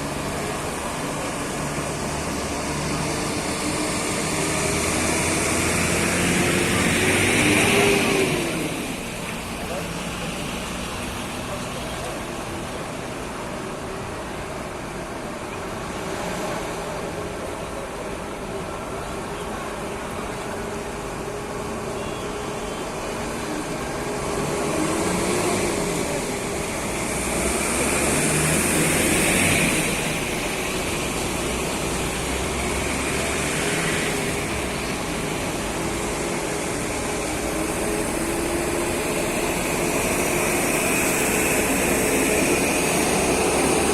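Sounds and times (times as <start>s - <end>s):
vehicle passing through water: 0.0s - 12.8s, 22.9s - 43.9s
vehicle engines running: 0.0s - 43.9s.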